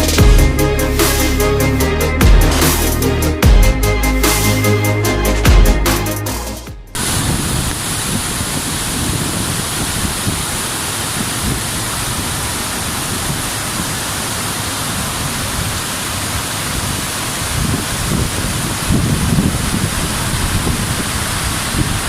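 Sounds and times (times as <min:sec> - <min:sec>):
electronic music: 0:00.0 - 0:07.0
waterfall rushing: 0:07.0 - 0:22.0.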